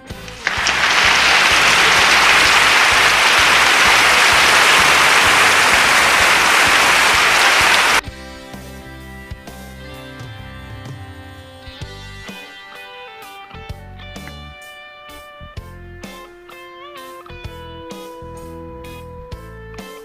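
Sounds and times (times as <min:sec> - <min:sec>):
applause: 0:00.0 - 0:08.0.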